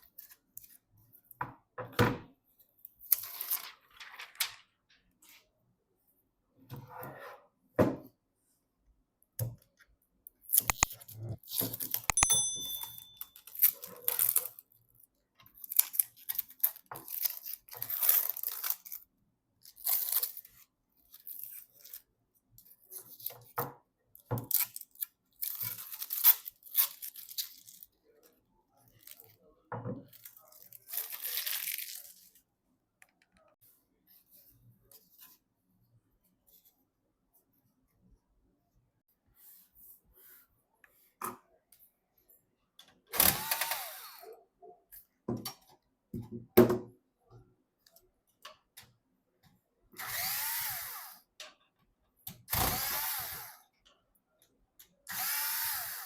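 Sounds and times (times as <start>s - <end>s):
packaging tearing and crinkling: 10.6s - 10.9s, 30.5s - 32.3s.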